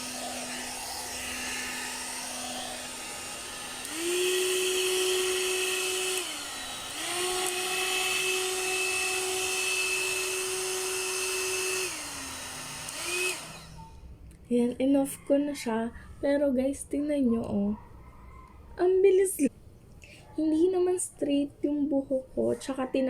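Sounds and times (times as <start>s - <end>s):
hair dryer brush whining: 0.0s - 14.1s.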